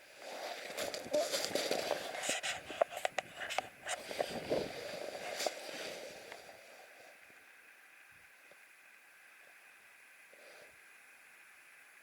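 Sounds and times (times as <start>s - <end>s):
rustling and scraping: 0.2s - 6.6s.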